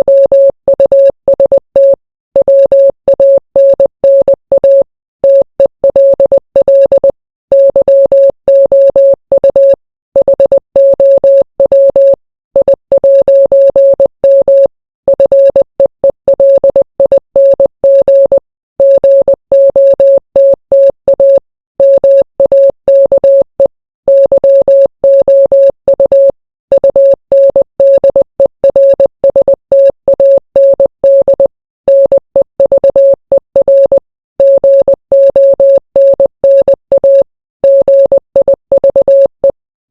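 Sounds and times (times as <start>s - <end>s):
morse code beeping: 0.0s - 39.6s.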